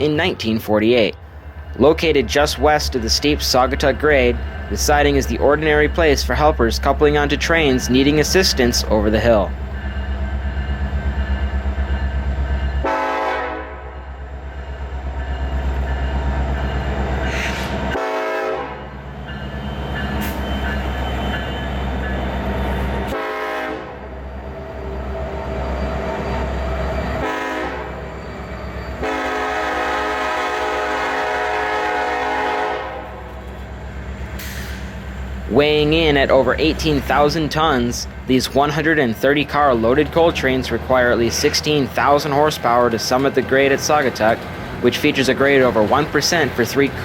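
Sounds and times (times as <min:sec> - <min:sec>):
diesel locomotive engine throbbing: 0:00.0 - 0:47.0
locomotive horn blasts: 0:12.8 - 0:14.0, 0:17.9 - 0:19.0, 0:23.1 - 0:24.1, 0:27.1 - 0:28.1, 0:29.0 - 0:33.4.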